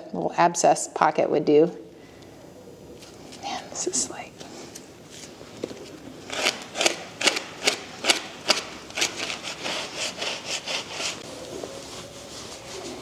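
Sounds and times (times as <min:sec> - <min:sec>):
rhythmic scrubbing strokes: 0:06.3 - 0:13.0.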